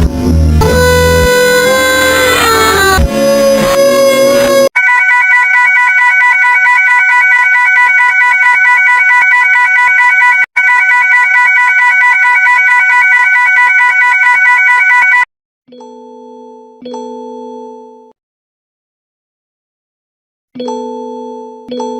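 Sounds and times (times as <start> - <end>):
pulsing electronic alarm tone: 0.0 - 15.3.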